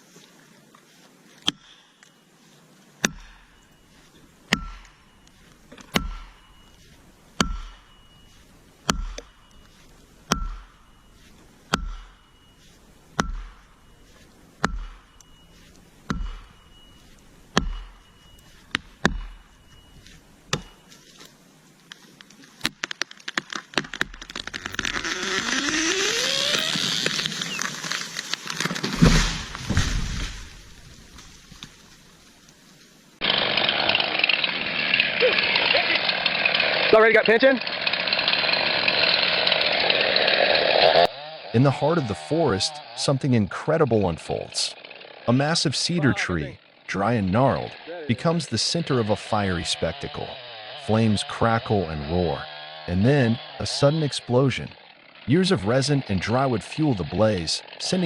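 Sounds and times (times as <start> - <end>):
chainsaw running: 3.0 - 21.3, 23.5 - 31.3, 33.2 - 58.0
heavy metallic strikes: 4.5 - 6.8, 7.4 - 19.7.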